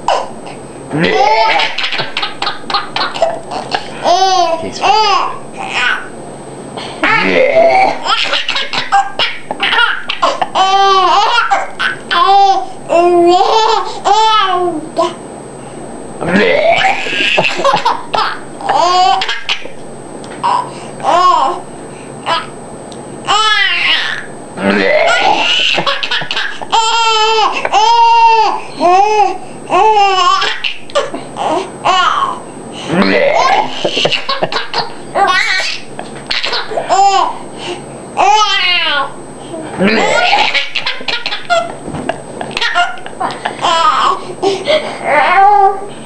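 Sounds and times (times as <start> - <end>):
baby laughing: 1.0 - 6.1, 7.0 - 15.2, 16.2 - 19.8, 20.4 - 21.6, 23.3 - 32.4, 33.0 - 37.4, 38.2 - 39.2, 39.8 - 45.9
man fake belching: 24.6 - 25.2, 32.9 - 33.5.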